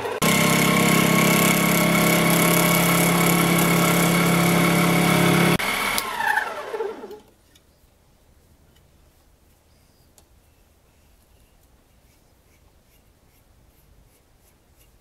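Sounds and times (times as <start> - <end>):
metal lathe turning wood: 0.0 - 7.2
motor winding down whine: 0.0 - 7.3.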